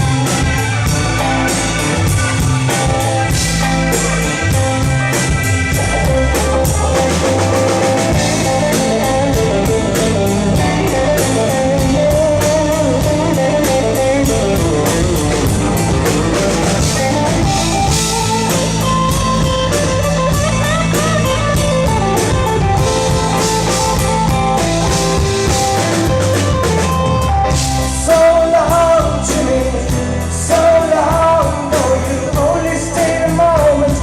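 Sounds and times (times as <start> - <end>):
live rock band playing: 0.0 - 34.0.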